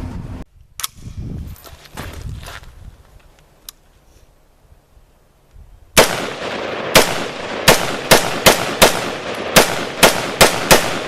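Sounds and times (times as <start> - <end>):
loud sharp bangs: 6.0 - 11.0.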